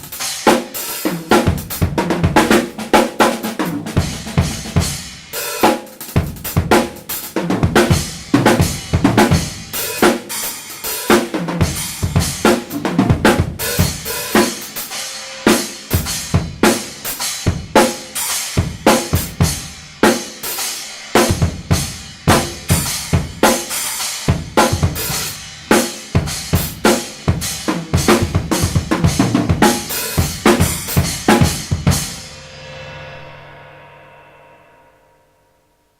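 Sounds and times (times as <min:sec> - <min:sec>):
drum kit groove: 0:00.0 - 0:33.5
trashy stacker cymbal: 0:31.8 - 0:35.2.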